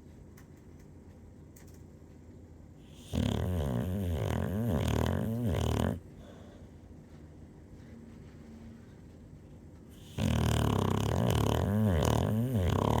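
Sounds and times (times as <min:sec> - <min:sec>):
loud wavering snore: 0:03.0 - 0:06.0, 0:10.0 - 0:13.0.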